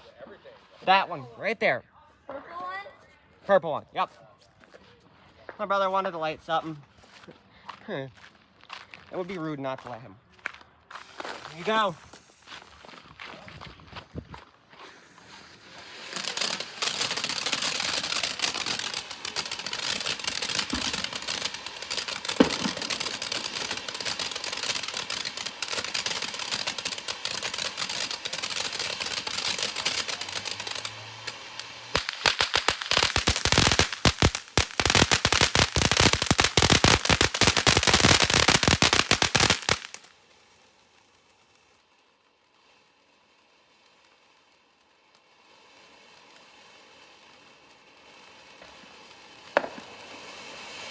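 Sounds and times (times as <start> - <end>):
fountain firework hissing and crackling: 10.8 - 50.9.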